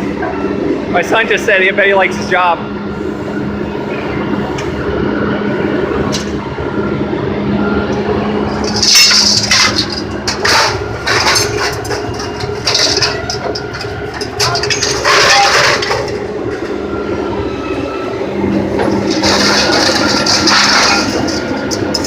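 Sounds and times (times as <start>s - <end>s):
crane engine hum: 0.0s - 22.0s
scrap metal crashing and clanging: 8.6s - 16.8s, 18.6s - 22.0s.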